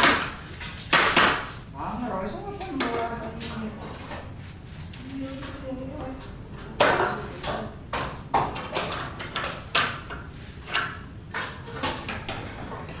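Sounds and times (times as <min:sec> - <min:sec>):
sharp knocks and clatters: 0:00.0 - 0:01.6.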